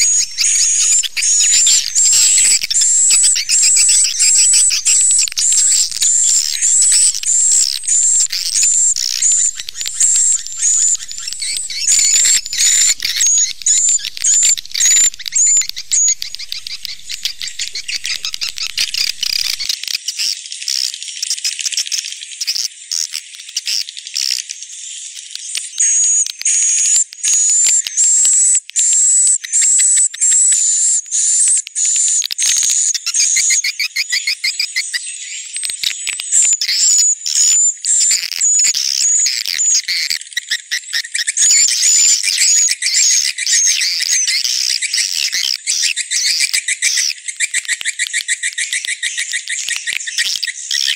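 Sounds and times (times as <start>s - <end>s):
swiftlet chirps and twittering: 0.0s - 19.7s.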